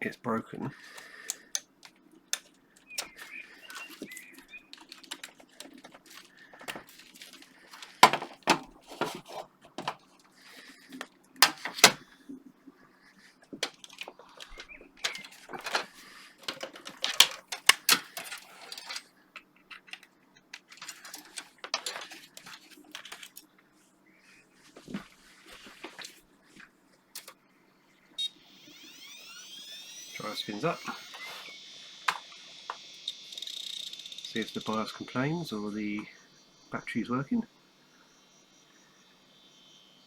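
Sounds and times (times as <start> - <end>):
computer hardware clicks and knocks: 0.9 - 9.1.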